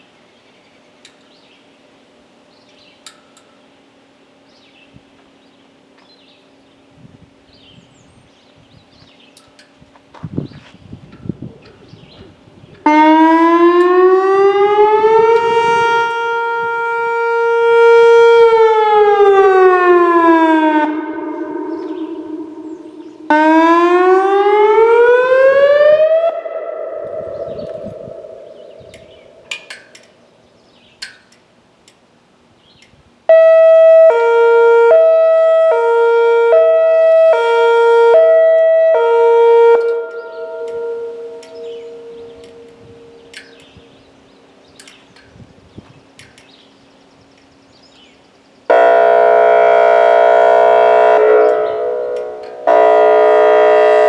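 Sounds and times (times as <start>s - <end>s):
electronic warning siren: 11.3s - 30.0s, 33.3s - 44.0s, 48.7s - 54.0s.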